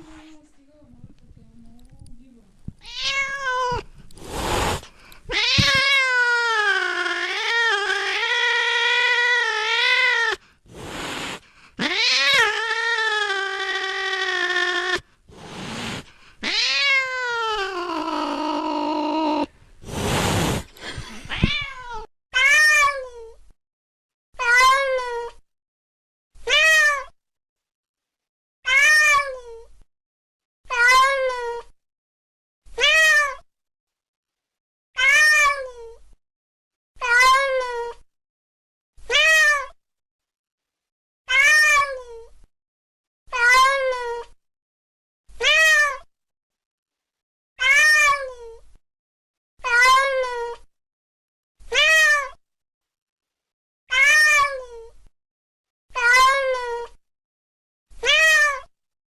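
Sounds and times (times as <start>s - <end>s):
cat meowing: 2.8s - 3.9s, 5.3s - 10.4s, 11.8s - 15.0s, 16.4s - 19.5s, 21.3s - 23.1s, 24.4s - 25.3s, 26.4s - 27.1s, 28.7s - 29.5s, 30.7s - 31.7s, 32.8s - 33.4s, 35.0s - 35.9s, 37.0s - 38.0s, 39.1s - 39.8s, 41.3s - 42.2s, 43.3s - 44.3s, 45.4s - 46.1s, 47.6s - 48.4s, 49.6s - 50.6s, 51.7s - 52.4s, 53.9s - 54.8s, 56.0s - 56.9s, 58.0s - 58.7s.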